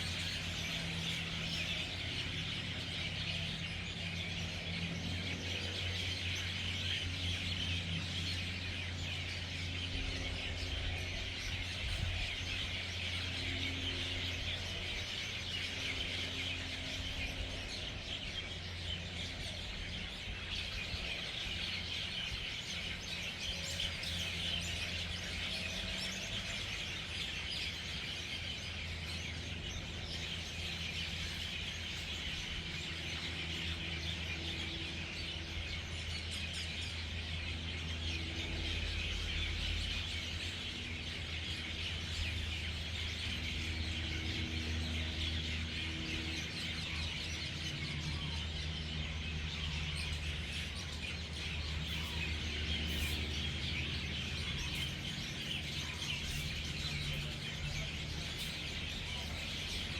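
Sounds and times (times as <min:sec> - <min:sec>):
birds chirping in chorus: 0:00.0 - 0:59.9.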